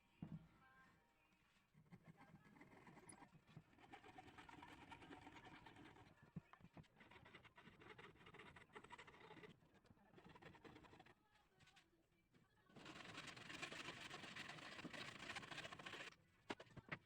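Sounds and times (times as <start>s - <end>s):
faint scratching: 1.5s - 12.0s, 12.7s - 17.0s.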